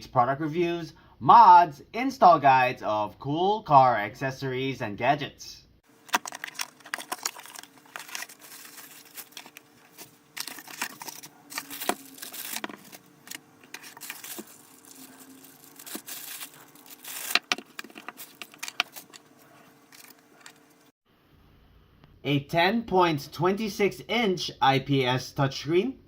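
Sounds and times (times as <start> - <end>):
faint hum: 5.6 - 22.3
packaging crinkling and rustling: 5.9 - 20.9.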